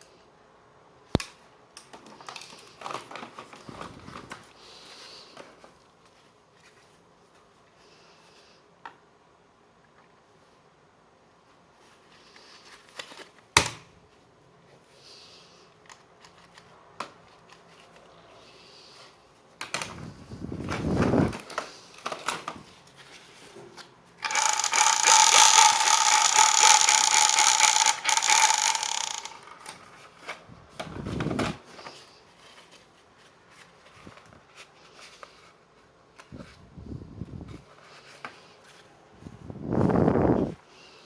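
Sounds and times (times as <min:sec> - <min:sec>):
toy gun running: 0:24.2 - 0:29.6.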